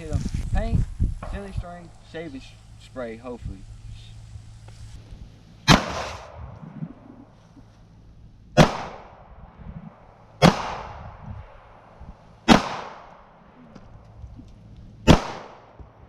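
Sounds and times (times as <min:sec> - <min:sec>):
pistol shots echoing: 0:05.7 - 0:06.3, 0:08.6 - 0:09.2, 0:10.4 - 0:11.0, 0:12.5 - 0:13.2, 0:15.0 - 0:15.8.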